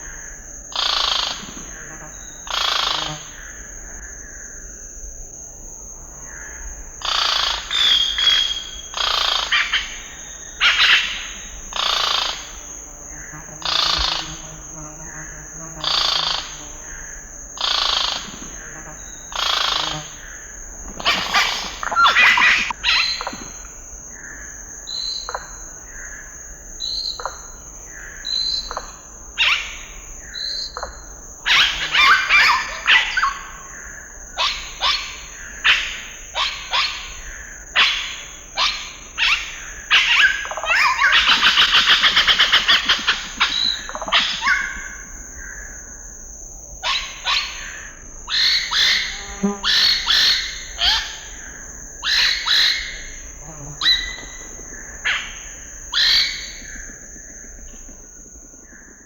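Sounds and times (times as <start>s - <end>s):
high insect drone: 0.0s - 59.0s
birds calling: 20.9s - 23.6s, 31.5s - 33.6s, 34.4s - 45.6s, 48.4s - 58.0s
bird rattling trill: 21.0s - 23.2s.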